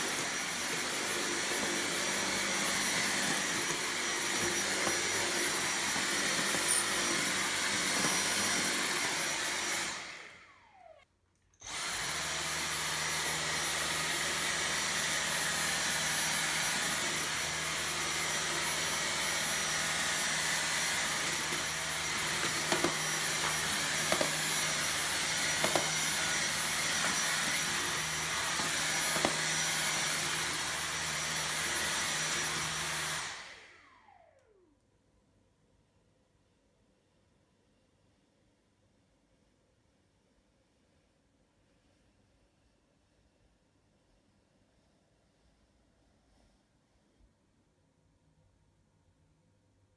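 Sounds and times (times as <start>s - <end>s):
vacuum cleaner whine: 0.0s - 11.0s, 11.6s - 34.8s.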